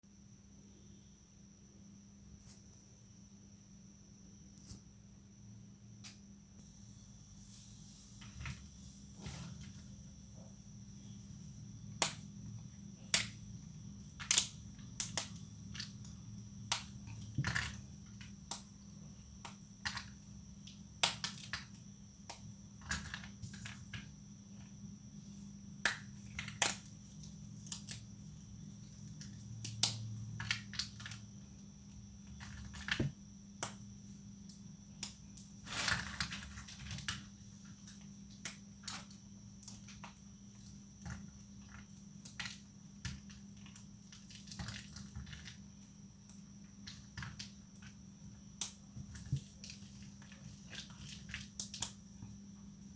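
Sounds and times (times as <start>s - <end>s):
soap plates snapping: 12.0s - 12.3s, 13.0s - 13.5s, 14.2s - 18.8s, 19.4s - 24.1s, 25.8s - 28.1s, 29.2s - 31.2s, 48.6s - 52.0s.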